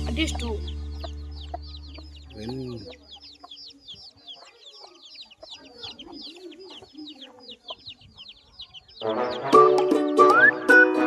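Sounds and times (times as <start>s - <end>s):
hen clucking: 0.0s - 10.2s
chicks peeping: 0.0s - 11.0s
loud music: 9.0s - 11.0s.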